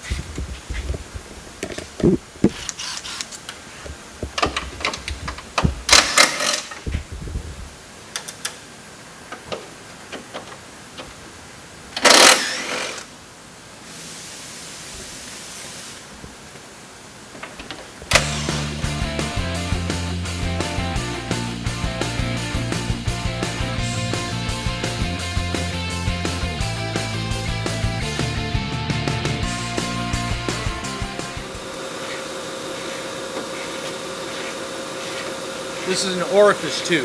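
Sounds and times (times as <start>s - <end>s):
hand tools clanking: 0.0s - 6.9s, 31.6s - 37.0s
soft hiss: 12.9s - 18.2s
music: 18.1s - 31.7s.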